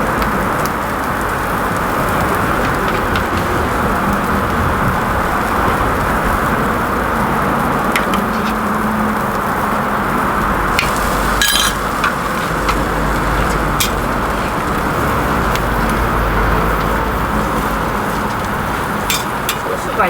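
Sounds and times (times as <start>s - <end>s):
food sizzling on a griddle: 0.0s - 20.0s
street traffic rumble: 0.0s - 20.0s
metal clink: 11.4s - 11.9s.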